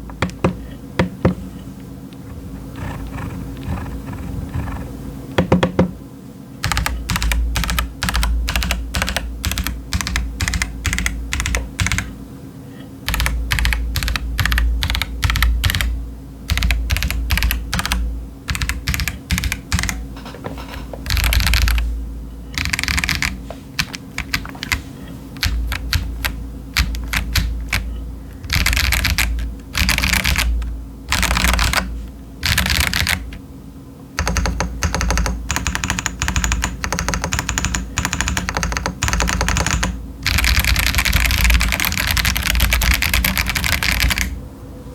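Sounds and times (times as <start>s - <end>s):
mechanical keyboard typing: 0.0s - 1.2s, 6.6s - 12.1s, 13.1s - 20.0s, 21.0s - 21.9s, 22.6s - 33.4s, 34.2s - 44.4s.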